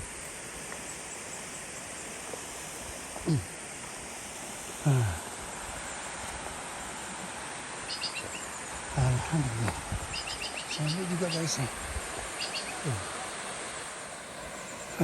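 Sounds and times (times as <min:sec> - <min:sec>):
waterfall rushing: 0:00.0 - 0:15.0
short falling vocal sounds: 0:03.2 - 0:03.5, 0:04.8 - 0:05.3, 0:12.8 - 0:13.0.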